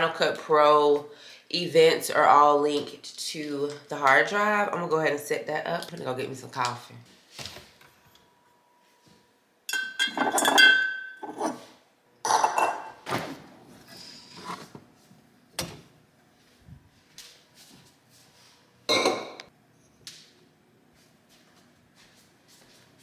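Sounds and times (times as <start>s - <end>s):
glass or ceramic clinks: 9.7s - 11.5s.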